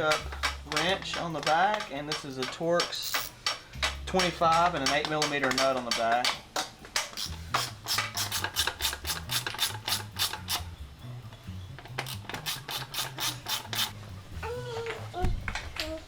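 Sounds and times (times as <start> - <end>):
ratchet wrench clicking: 0.0 - 6.4, 7.0 - 10.7, 11.8 - 14.0
background music with bass: 0.0 - 16.0.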